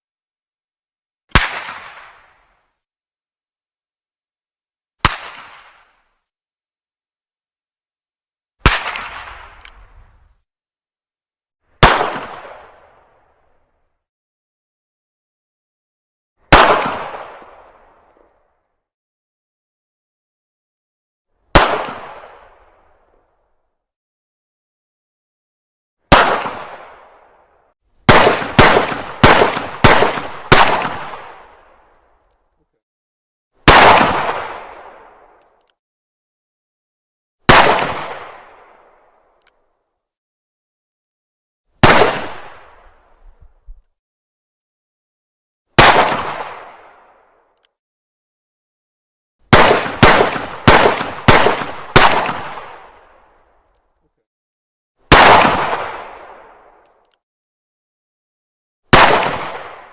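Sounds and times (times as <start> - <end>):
pistol shots: 1.3 - 2.3, 5.0 - 5.8, 8.6 - 9.7, 11.8 - 12.8, 16.5 - 17.6, 21.5 - 22.4, 26.1 - 27.1, 28.1 - 31.6, 33.6 - 35.1, 37.5 - 38.7, 41.8 - 42.8, 45.8 - 46.9, 49.5 - 53.1, 55.1 - 56.3, 58.9 - 59.9
faint click: 9.6 - 9.8, 56.8 - 57.2.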